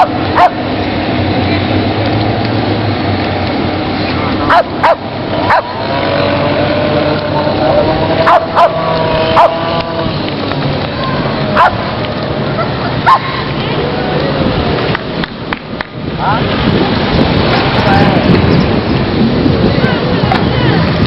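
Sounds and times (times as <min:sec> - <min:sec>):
dog barking: 0:00.0 - 0:00.6, 0:04.5 - 0:05.7, 0:08.2 - 0:08.8, 0:09.4 - 0:09.6, 0:11.6 - 0:11.8, 0:13.0 - 0:13.4
steady background noise: 0:00.0 - 0:21.0.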